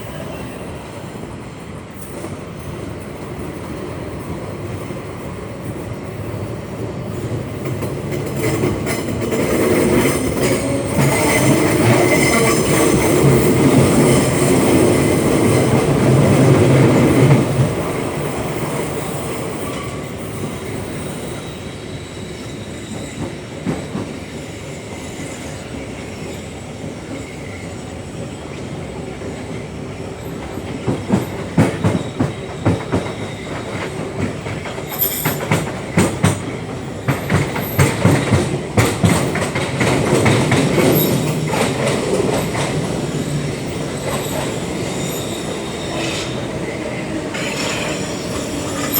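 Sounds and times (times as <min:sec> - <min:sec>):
low train hum: 0:00.0 - 0:48.9
train wheel squeal: 0:00.0 - 0:48.9
wheels clacking over rail joints: 0:30.6 - 0:48.9.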